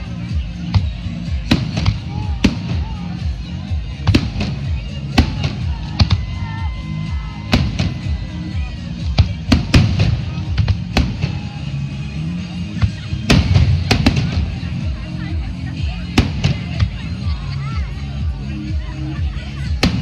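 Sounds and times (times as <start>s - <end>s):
music playing: 0.0s - 20.0s
firework bangs and booms: 0.8s - 3.3s, 3.9s - 6.4s, 7.4s - 8.3s, 9.0s - 11.7s, 12.8s - 14.9s, 16.1s - 17.0s.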